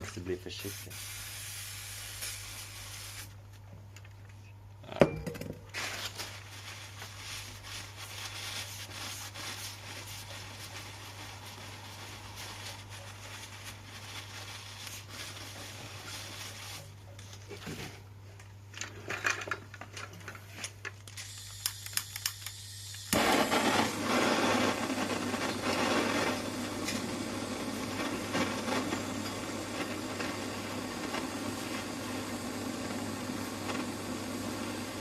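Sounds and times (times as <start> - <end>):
steady machine noise: 23.2 - 35.0.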